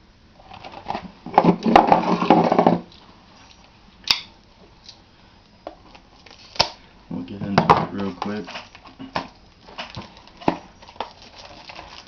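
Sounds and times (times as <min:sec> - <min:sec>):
package tearing open: 0:09.6 - 0:12.0.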